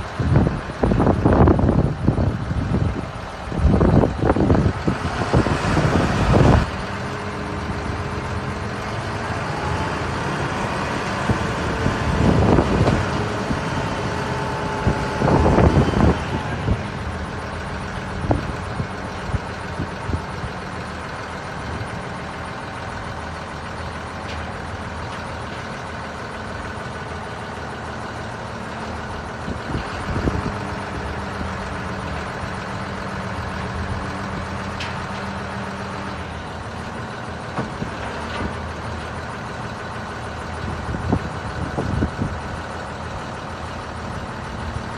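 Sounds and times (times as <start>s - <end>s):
diesel engine running: 0.0s - 44.9s.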